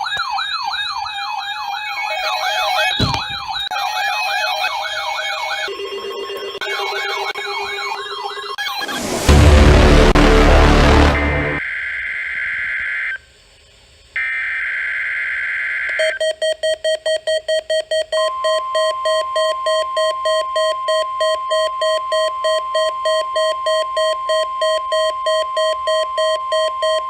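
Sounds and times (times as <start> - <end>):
rapid alarm beeps: 0.0 - 8.8, 16.0 - 27.0
harsh two-tone digital bursts: 1.8 - 11.6
steady alert tone: 2.0 - 11.6.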